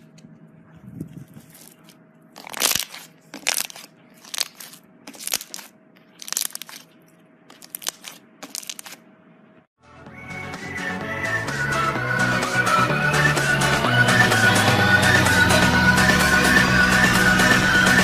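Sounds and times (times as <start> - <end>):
crunchy slime squeezed crackling: 1.4 - 6.9, 7.5 - 9.0.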